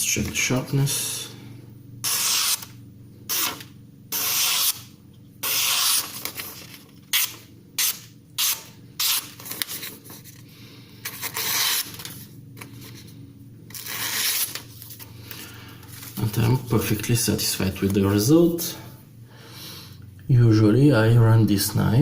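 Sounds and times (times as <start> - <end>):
knife slicing through paper: 3.3 - 9.9.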